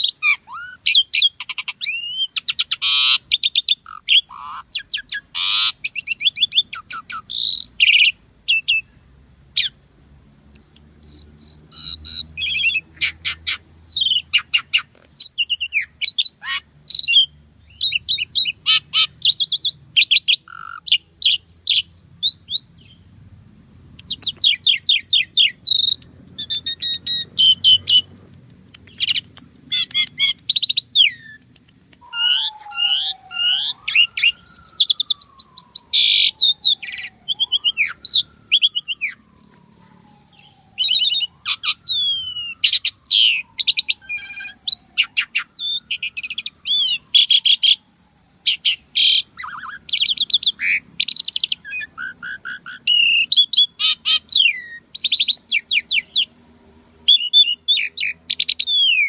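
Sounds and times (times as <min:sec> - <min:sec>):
starling singing: 0:00.0 - 0:09.0, 0:09.6 - 0:09.8, 0:10.6 - 0:23.1, 0:24.0 - 0:59.0.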